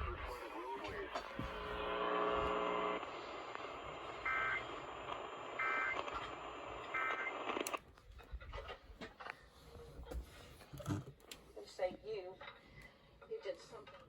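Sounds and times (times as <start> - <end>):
radio hiss: 0.0 - 7.8
click: 7.6 - 7.8.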